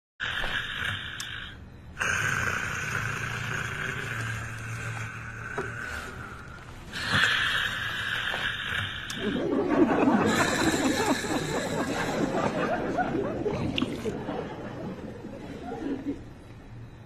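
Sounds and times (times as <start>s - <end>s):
person snoring: 0.2s - 12.9s.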